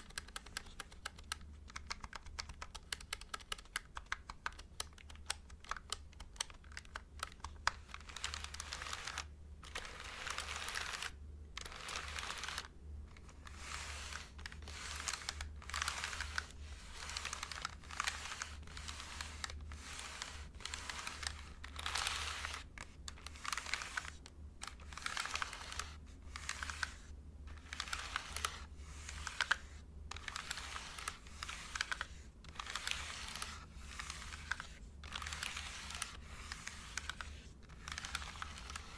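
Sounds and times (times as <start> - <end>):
computer keyboard typing: 0.0 - 12.7.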